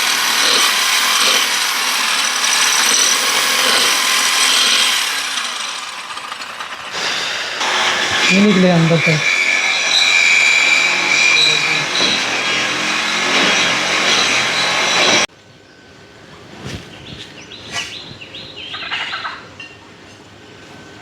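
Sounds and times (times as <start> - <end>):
metal grinding with high whine: 0.0 - 15.3.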